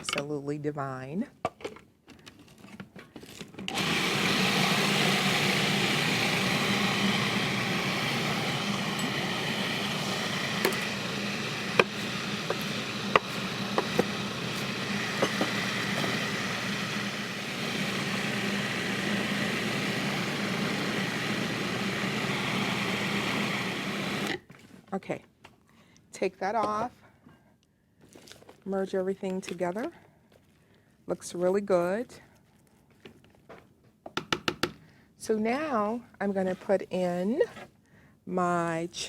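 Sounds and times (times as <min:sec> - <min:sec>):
blender running: 0:03.7 - 0:24.4.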